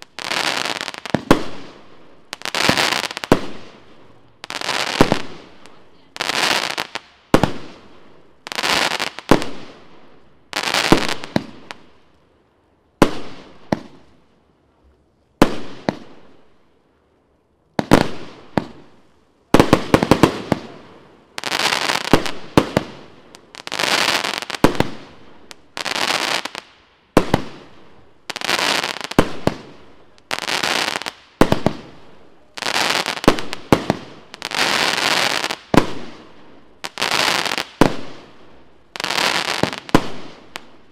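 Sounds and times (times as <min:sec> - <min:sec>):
firework crackle: 0:00.0 - 0:12.2, 0:17.8 - 0:40.9
firework bangs: 0:04.4 - 0:07.8, 0:28.3 - 0:38.4, 0:39.0 - 0:40.9.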